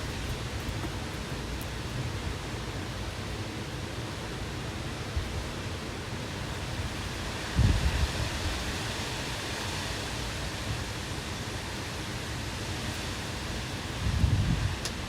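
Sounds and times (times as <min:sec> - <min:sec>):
wind buffeting microphone: 0:06.8 - 0:09.3, 0:13.6 - 0:15.0
strong wind rushing: 0:07.2 - 0:09.0, 0:13.9 - 0:15.0.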